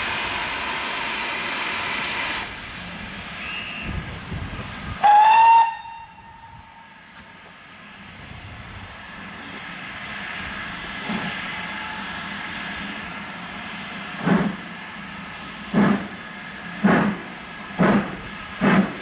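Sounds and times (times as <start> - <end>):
steam locomotive whistle blast: 3.4 - 4.0, 5.0 - 6.8.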